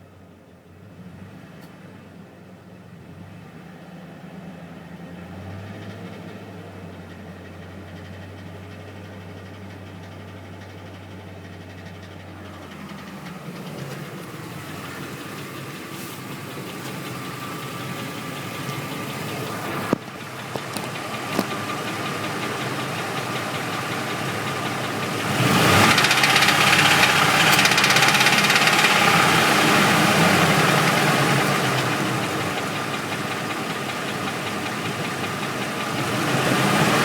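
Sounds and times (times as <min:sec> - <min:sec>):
engine idling with knock: 0:07.7 - 0:37.0.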